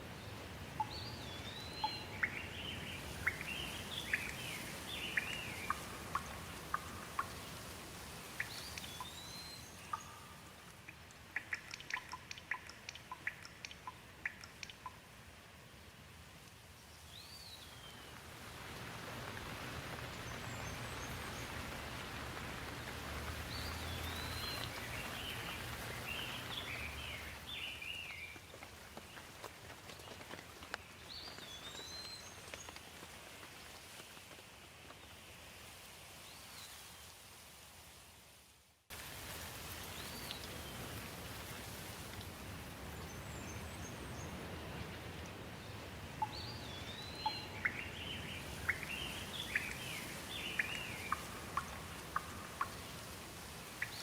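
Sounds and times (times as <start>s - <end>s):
rain falling on leaves: 0.0s - 54.0s
birds chirping: 0.8s - 7.6s, 11.4s - 15.0s, 20.0s - 28.4s, 45.5s - 53.0s.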